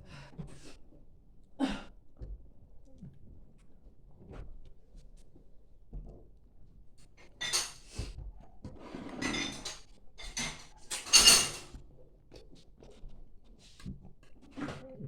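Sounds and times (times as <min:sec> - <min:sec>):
dishes and cutlery clattering: 0:07.2 - 0:08.1, 0:09.0 - 0:11.8.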